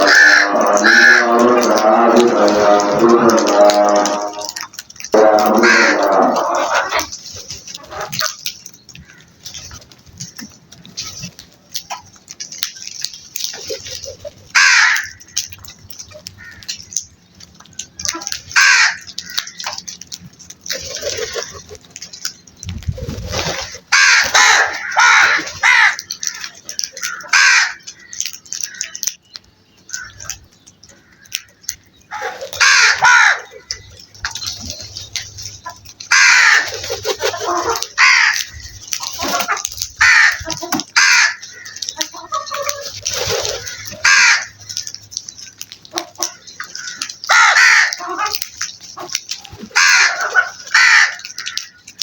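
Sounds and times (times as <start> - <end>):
crows cawing: 0.0 - 7.2, 8.9 - 10.5, 14.0 - 16.9, 18.0 - 20.0, 23.5 - 29.1, 29.8 - 52.0.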